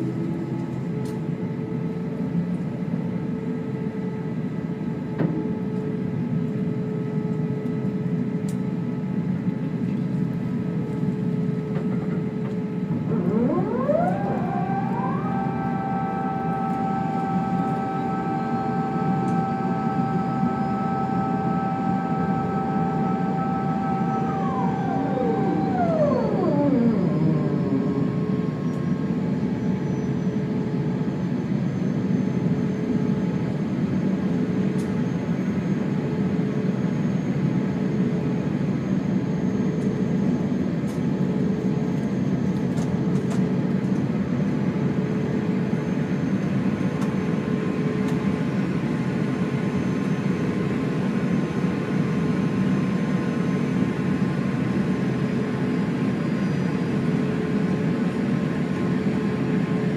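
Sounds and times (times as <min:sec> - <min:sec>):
aircraft cabin engine rush: 0:00.0 - 0:59.9
faint hum tones: 0:08.0 - 0:32.6.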